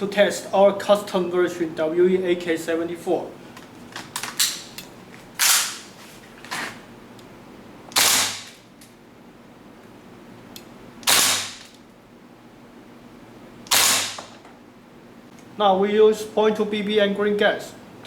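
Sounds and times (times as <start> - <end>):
airsoft rifle shots: 7.9 - 8.6, 11.0 - 11.7, 13.7 - 14.3.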